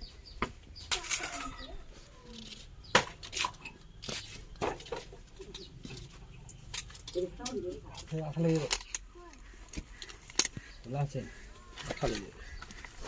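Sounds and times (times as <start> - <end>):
sharp knocks and clatters: 2.8 - 7.1.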